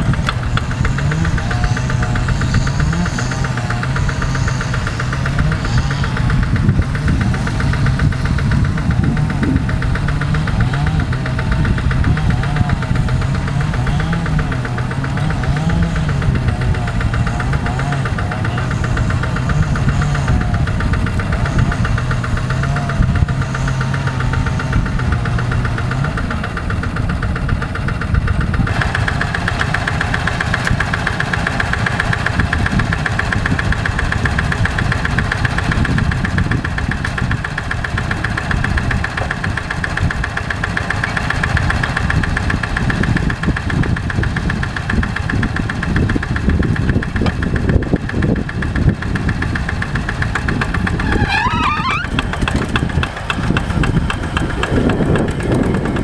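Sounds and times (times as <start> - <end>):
diesel tractor engine running: 0.0 - 56.0.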